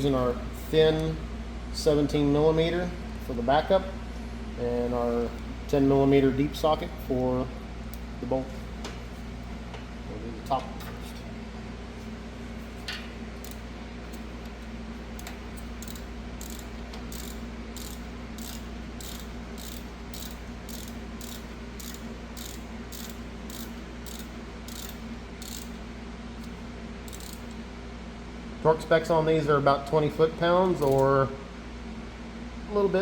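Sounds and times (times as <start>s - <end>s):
steady low hum: 0.0s - 33.0s
hand ratchet clicking: 15.2s - 25.8s, 27.1s - 27.6s, 30.8s - 31.0s.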